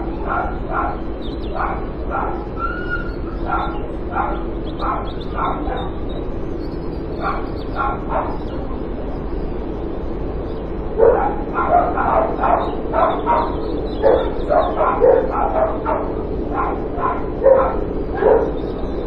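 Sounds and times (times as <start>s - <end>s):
dog barking: 0.0s - 6.0s, 7.2s - 8.6s, 11.0s - 18.6s
low background hum: 0.0s - 19.0s.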